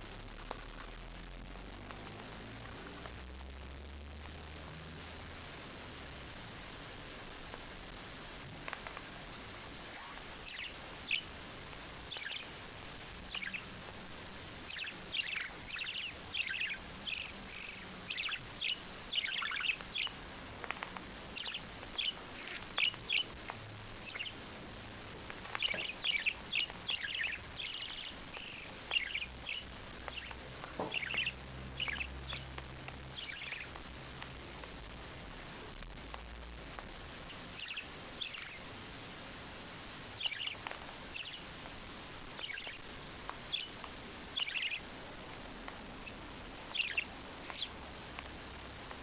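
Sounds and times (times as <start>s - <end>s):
bird chirping: 8.7s - 33.8s, 37.2s - 38.8s, 40.2s - 41.6s, 42.3s - 44.9s, 46.0s - 48.0s.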